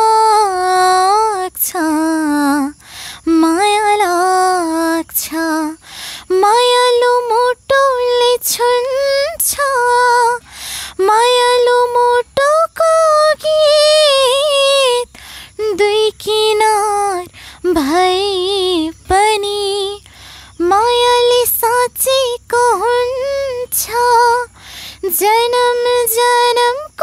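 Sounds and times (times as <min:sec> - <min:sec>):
girl singing unaccompanied: 0:00.0 - 0:27.0
singer breathing: 0:02.8 - 0:03.2, 0:05.8 - 0:06.3, 0:10.4 - 0:11.0, 0:15.1 - 0:15.6, 0:17.3 - 0:17.6, 0:20.0 - 0:20.6, 0:24.5 - 0:25.0.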